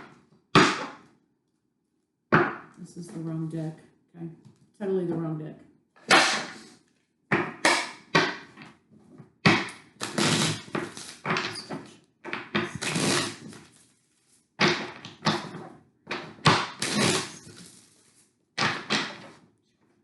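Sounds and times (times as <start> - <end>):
cards being shuffled: 10.0 - 11.8, 12.4 - 14.5.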